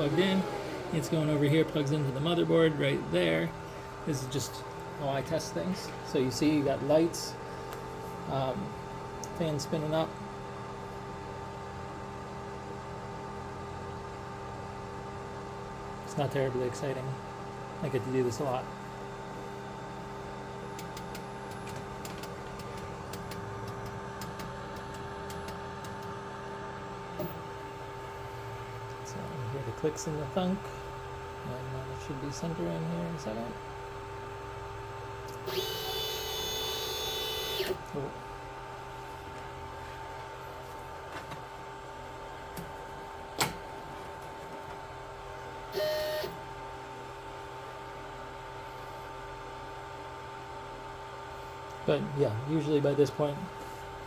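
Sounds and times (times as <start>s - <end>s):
laser cutter fans humming: 0.0s - 44.1s, 44.8s - 54.0s
motor whir: 35.3s - 37.8s, 45.7s - 46.4s.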